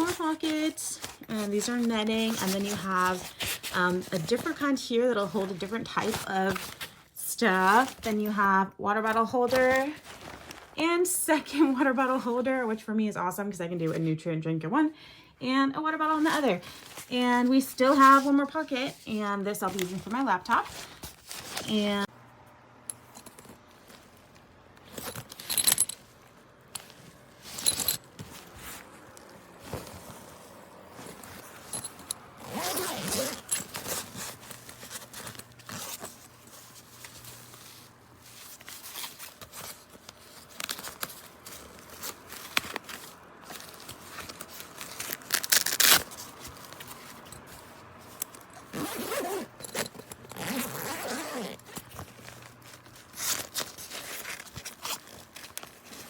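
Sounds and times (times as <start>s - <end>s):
bag handling: 0.0s - 8.5s, 9.1s - 10.8s, 16.1s - 22.1s, 22.8s - 56.0s
backpack zippers pulled: 31.6s - 36.3s, 44.8s - 46.2s, 48.2s - 55.6s.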